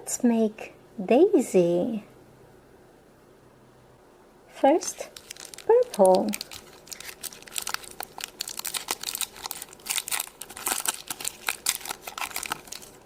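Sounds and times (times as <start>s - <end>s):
hands handling modelling clay: 5.0s - 13.0s.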